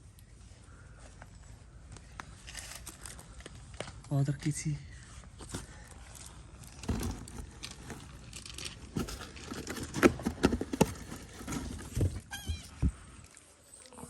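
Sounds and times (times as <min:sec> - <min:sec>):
rustling and tapping from handling: 0:05.4 - 0:12.9.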